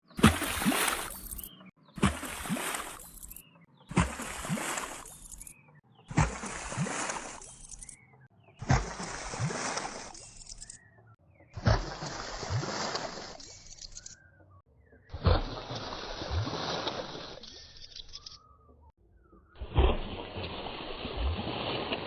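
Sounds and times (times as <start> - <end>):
water splash: 0.2 - 5.5, 6.1 - 8.0, 8.6 - 10.7, 11.6 - 14.0, 15.1 - 17.4, 19.6 - 22.0.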